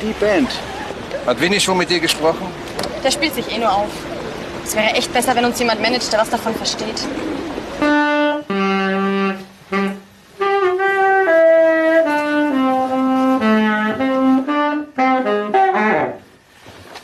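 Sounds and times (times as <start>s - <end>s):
saxophone slow melody: 7.4s - 16.5s.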